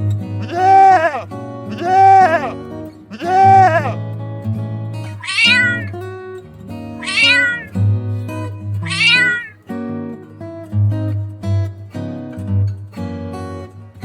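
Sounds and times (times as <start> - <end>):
cat meowing: 5.2 - 5.9, 7.0 - 7.8, 8.8 - 9.6.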